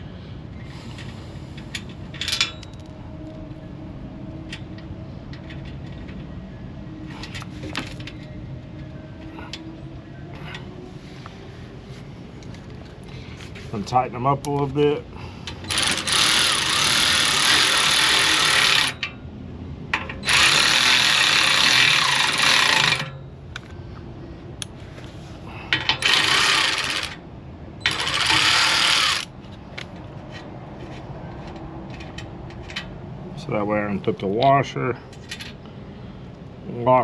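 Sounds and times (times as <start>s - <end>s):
power tool running: 15.7s - 19.0s, 20.2s - 23.1s, 26.0s - 27.2s, 27.9s - 29.3s.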